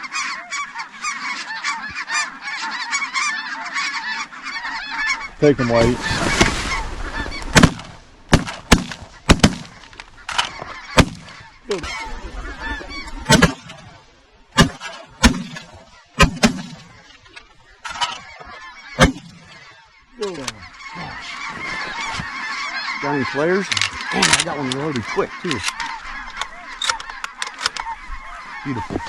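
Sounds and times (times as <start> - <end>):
geese calling: 0.0 - 29.0
shotguns firing: 7.5 - 11.4, 13.3 - 13.9, 14.6 - 17.0, 19.0 - 19.6.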